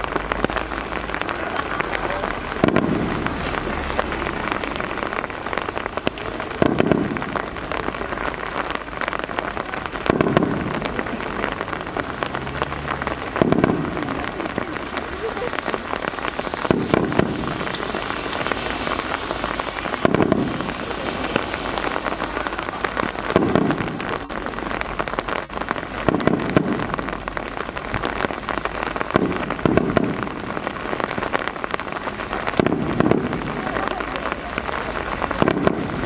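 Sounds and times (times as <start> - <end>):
fireworks booming dully: 0.0 - 36.0
steady rain pattering: 0.0 - 36.0.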